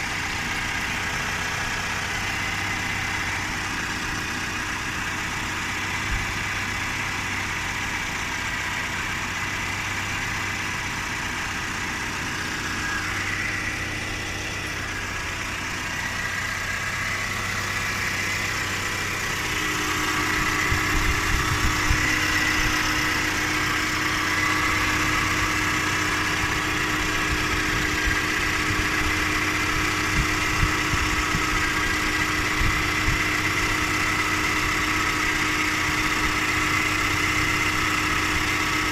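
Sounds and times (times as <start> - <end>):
car engine idling: 0.0 - 38.9
high engine whine: 0.0 - 38.9.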